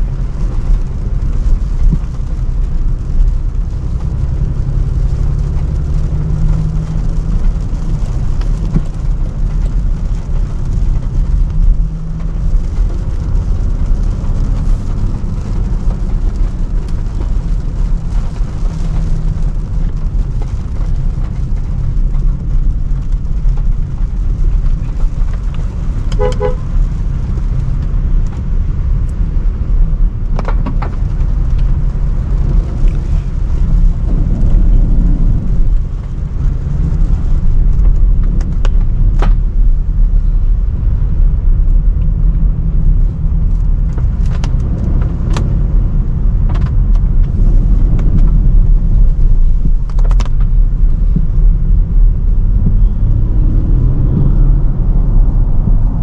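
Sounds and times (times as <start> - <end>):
car road and engine rumble: 0.0 - 56.0
vehicle horn toot: 26.2 - 26.6.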